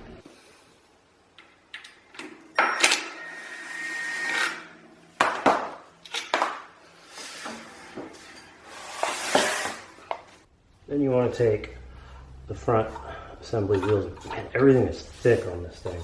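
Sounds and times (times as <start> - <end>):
scraping: 12.5 - 16.0.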